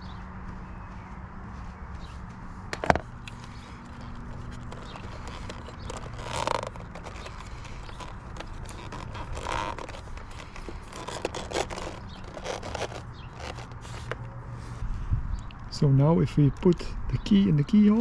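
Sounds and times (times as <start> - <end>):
short scraping sounds: 2.9 - 14.9.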